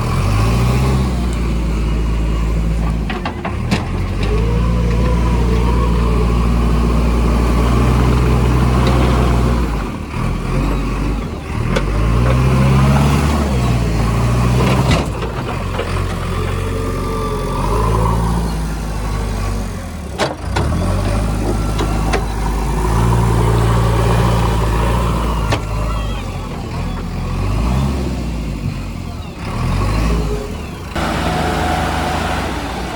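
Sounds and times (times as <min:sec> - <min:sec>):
heavy diesel engines revving: 0:00.0 - 0:32.9.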